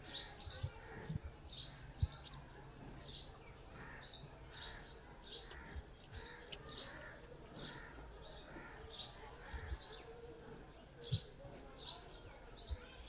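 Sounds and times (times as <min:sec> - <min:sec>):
small bird chirping: 0:04.6 - 0:10.1
sharp clicks: 0:05.4 - 0:07.0.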